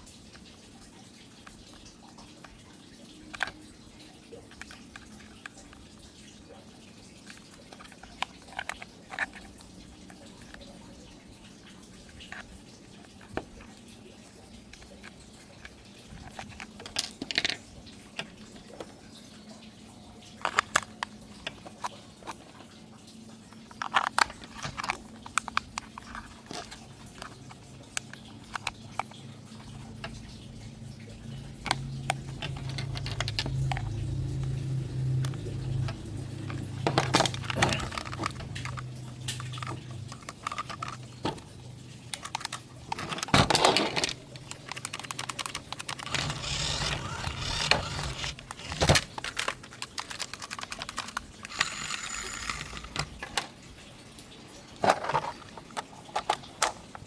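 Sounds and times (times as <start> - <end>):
objects being handled: 23.7 - 29.1, 31.6 - 34.6, 35.2 - 53.6, 54.7 - 57.0.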